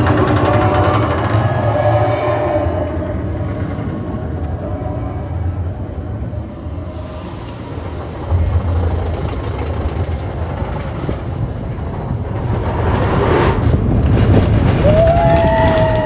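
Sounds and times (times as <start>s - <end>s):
roller coaster rumbling on track: 0.0s - 16.0s
rushing air: 5.6s - 16.0s.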